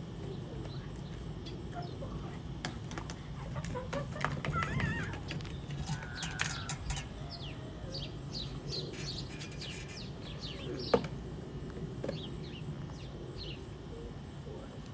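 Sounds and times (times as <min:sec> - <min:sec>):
small birds chirping: 0:00.0 - 0:11.2, 0:12.0 - 0:14.7.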